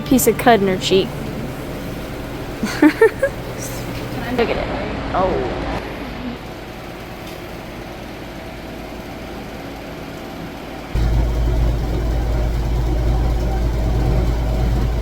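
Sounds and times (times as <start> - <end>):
motor humming: 0.0 - 4.5, 11.0 - 15.0.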